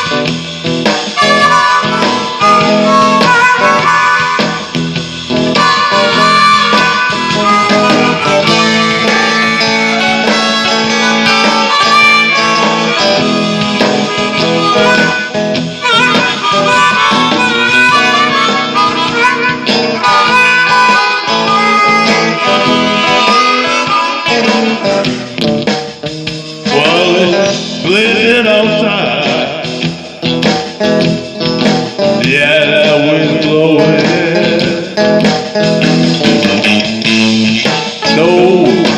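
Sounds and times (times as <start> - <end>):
harmonica playing blues solo: 0.0 - 28.3, 29.6 - 38.9
strummed guitar: 0.0 - 38.9.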